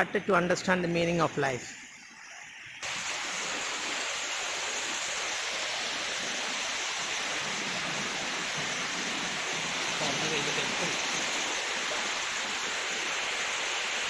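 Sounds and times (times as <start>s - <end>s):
waterfall rushing: 2.8s - 14.0s.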